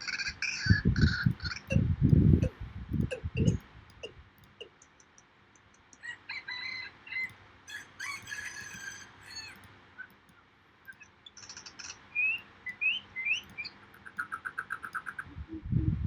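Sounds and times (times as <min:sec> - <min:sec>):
fast bird trill: 0:02.4 - 0:09.6, 0:10.9 - 0:15.3
bird calling: 0:02.4 - 0:10.2, 0:10.9 - 0:15.4.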